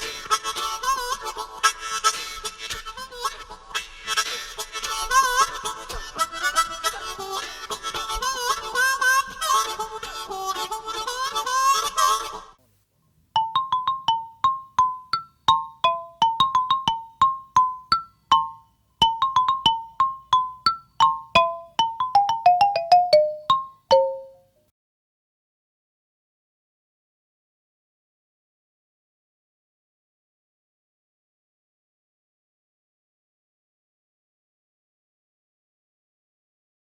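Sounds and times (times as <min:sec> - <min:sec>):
plucked instrument melody: 0:13.4 - 0:24.4.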